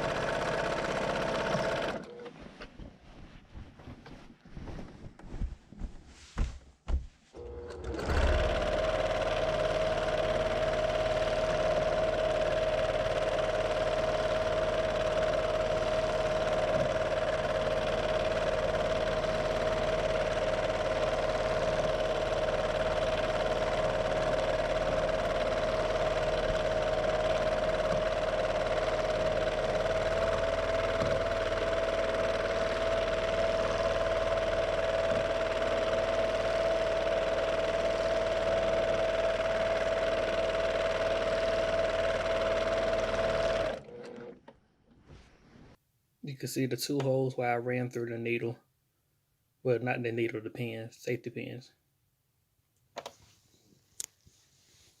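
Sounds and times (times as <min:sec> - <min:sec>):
sewing machine running: 0:00.0 - 0:02.2, 0:07.4 - 0:44.4.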